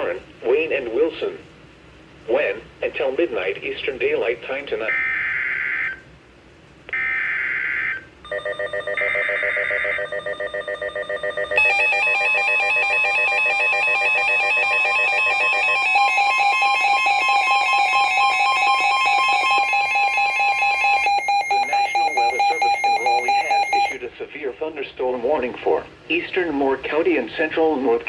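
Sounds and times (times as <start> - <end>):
steady warning alarm tone: 4.9 - 6.0, 6.9 - 24.1
screeching digital data bursts: 8.3 - 24.0
rapidly pulsing electronic beep: 8.3 - 24.1.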